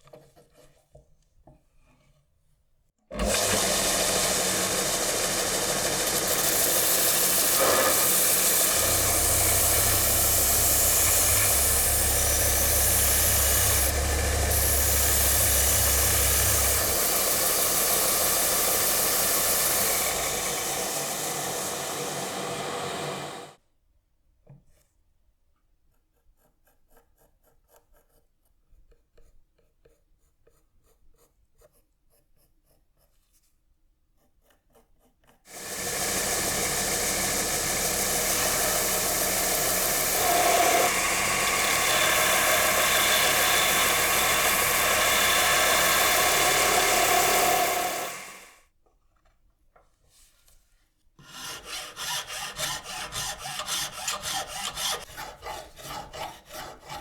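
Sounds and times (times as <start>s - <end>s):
power tool grinding: 3.1s - 23.6s, 35.5s - 48.6s, 51.2s - 57.0s.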